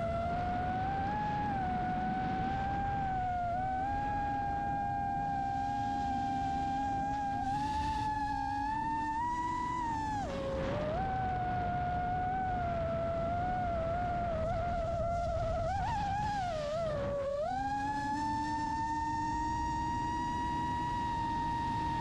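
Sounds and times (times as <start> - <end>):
quadcopter motors whining: 0.0 - 22.0.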